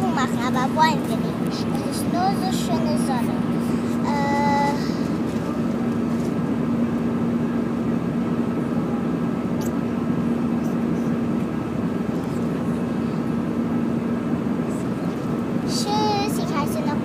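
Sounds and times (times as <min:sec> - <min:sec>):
airliner engine and airflow noise: 0:00.0 - 0:17.0
steady low hum: 0:00.0 - 0:17.0.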